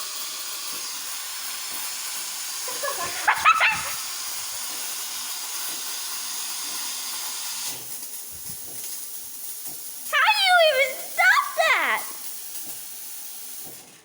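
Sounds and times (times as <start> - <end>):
coffee maker hissing steam: 0.0 - 14.0
short high yelp-like cry: 10.1 - 12.2.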